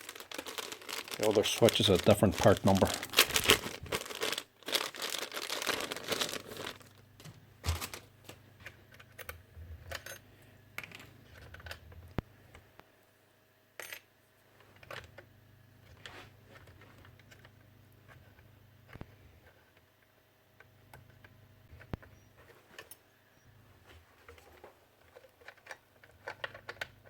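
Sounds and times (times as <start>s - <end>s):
crinkling rustle: 0.0s - 8.4s.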